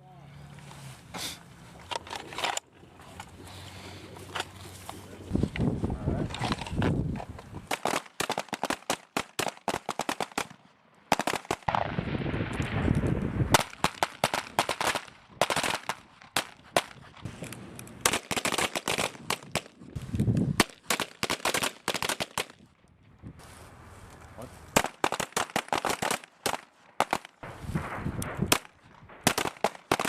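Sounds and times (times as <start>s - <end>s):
pistol gunshots: 24.8s - 30.0s.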